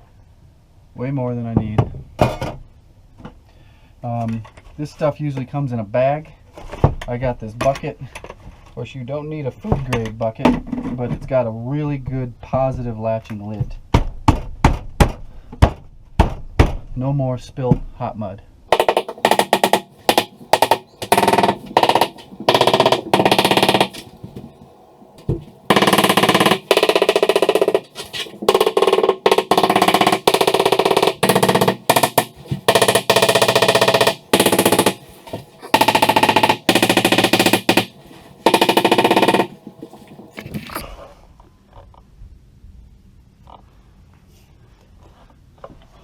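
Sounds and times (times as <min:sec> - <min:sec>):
power drill mixing paddle whine: 0:18.8 - 0:40.8.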